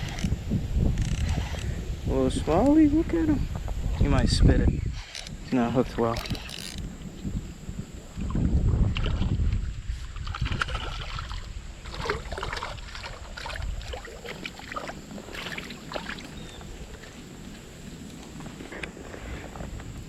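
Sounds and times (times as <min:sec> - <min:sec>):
low rumble on microphone: 0:00.0 - 0:20.0
water splashing and sloshing: 0:08.1 - 0:19.9.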